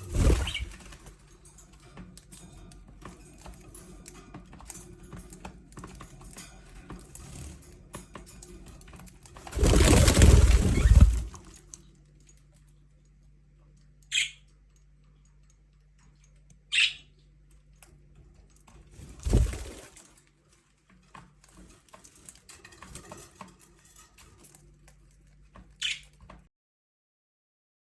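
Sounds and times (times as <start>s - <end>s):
loud rustling: 9.4s - 11.6s, 19.0s - 20.0s
budgerigars chirping: 16.7s - 17.1s, 25.8s - 26.0s.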